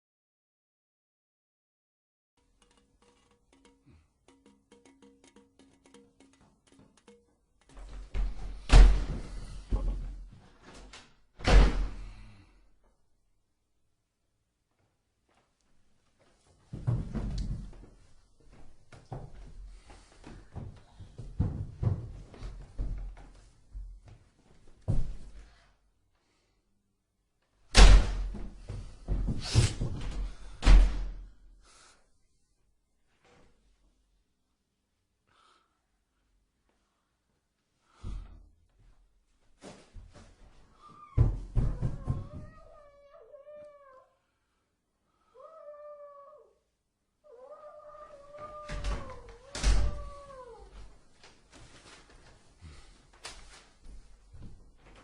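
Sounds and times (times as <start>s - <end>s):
door slamming: 8.2s - 9.8s, 11.4s - 12.1s, 27.8s - 28.4s, 48.7s - 50.1s
cat meowing: 41.8s - 44.2s, 45.3s - 46.6s, 47.2s - 50.7s.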